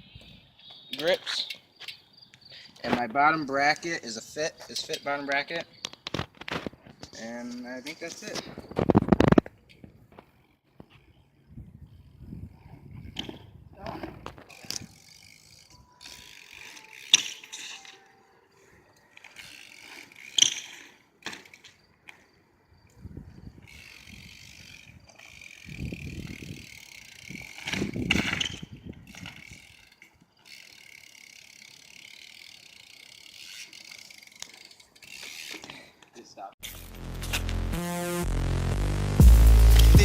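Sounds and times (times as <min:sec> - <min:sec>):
bike hub ratcheting: 0:14.4 - 0:18.0, 0:19.1 - 0:22.2, 0:23.6 - 0:35.9.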